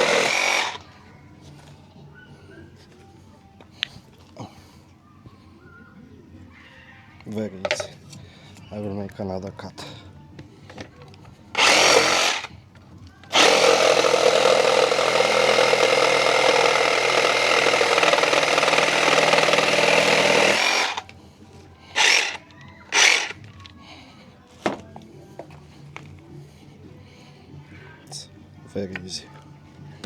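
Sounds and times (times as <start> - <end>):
reciprocating saw cutting wood: 0.0 - 0.8, 11.6 - 12.5, 13.3 - 21.1, 22.0 - 23.4.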